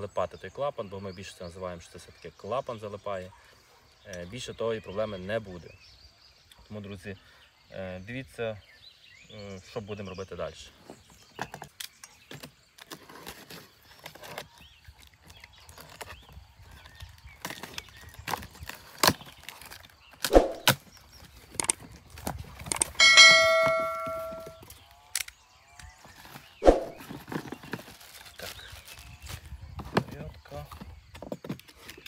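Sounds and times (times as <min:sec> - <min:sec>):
handling knocks and clicks: 0:21.5 - 0:21.8, 0:22.6 - 0:24.6
bell-like ringing tone: 0:23.0 - 0:24.6.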